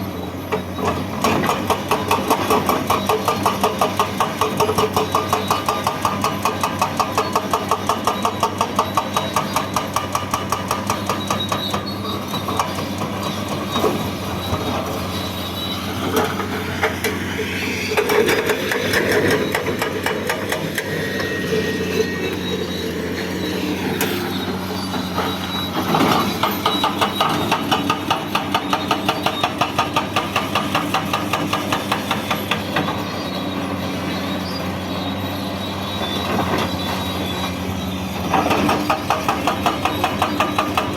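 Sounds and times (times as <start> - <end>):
diesel engine running: 0.0 - 40.9
hydraulic breaker hammering: 23.7 - 33.0, 38.3 - 40.9.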